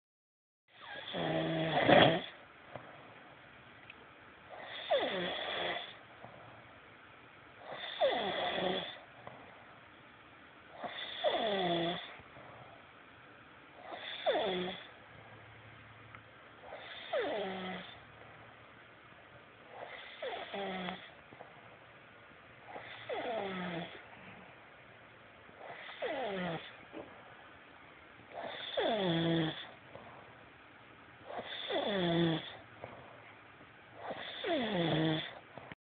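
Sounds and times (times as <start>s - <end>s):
person snoring: 0.8s - 2.4s, 4.6s - 6.0s, 7.7s - 9.0s, 10.8s - 12.2s, 13.8s - 14.9s, 19.8s - 21.1s, 22.7s - 24.0s, 25.6s - 26.8s, 28.3s - 29.8s, 31.3s - 32.6s, 34.0s - 35.4s
quiet breathing: 4.4s - 6.9s, 7.6s - 9.9s, 10.6s - 13.0s, 28.3s - 30.6s, 31.2s - 35.8s.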